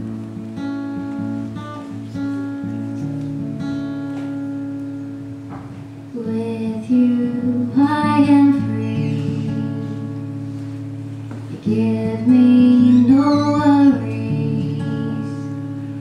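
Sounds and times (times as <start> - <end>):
guitar strumming chords: 0.0 - 16.0
girl singing: 6.1 - 10.1, 11.5 - 15.7.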